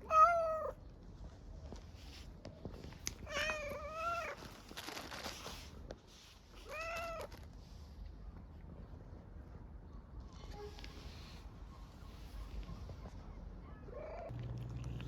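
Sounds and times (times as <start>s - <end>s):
cat meowing: 0.0s - 0.8s, 3.2s - 4.4s.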